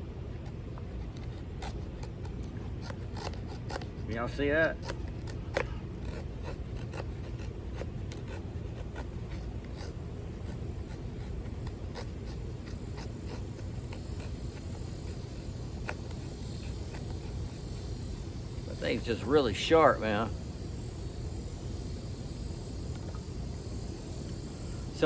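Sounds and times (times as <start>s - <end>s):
knife scraping wood: 0.1s - 19.3s.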